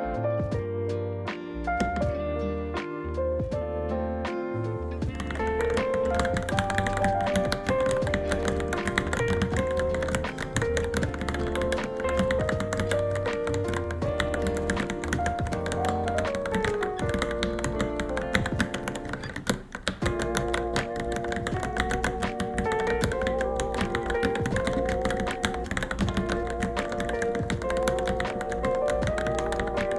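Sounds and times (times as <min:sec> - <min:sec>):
background music: 0:00.0 - 0:29.9
keyboard typing: 0:01.4 - 0:02.2, 0:04.4 - 0:29.9.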